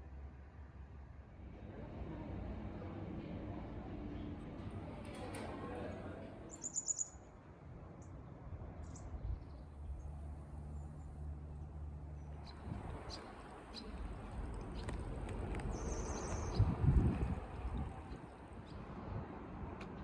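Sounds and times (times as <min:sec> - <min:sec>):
outdoor background noise: 0:00.0 - 0:20.0
small bird chirping: 0:06.5 - 0:07.2, 0:15.7 - 0:16.7.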